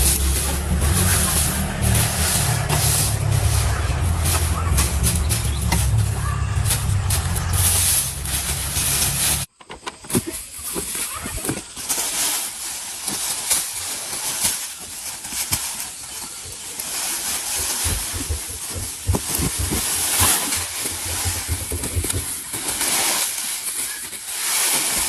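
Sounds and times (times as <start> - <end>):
rumble: 0.0 - 9.5, 17.4 - 22.8
knocks and clatter: 0.0 - 10.2, 17.5 - 22.8.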